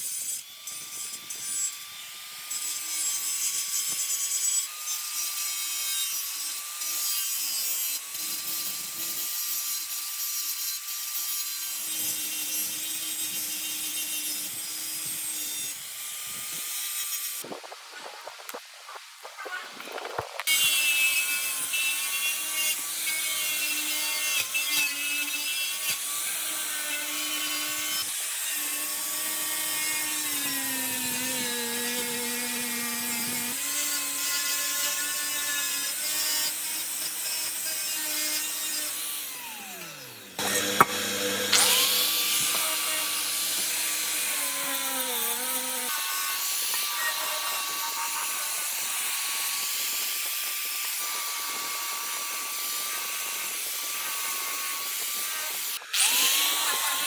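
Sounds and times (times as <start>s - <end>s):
power tool motor whining: 20.0s - 50.2s, 51.0s - 57.0s
power tool switch click: 40.4s - 41.8s.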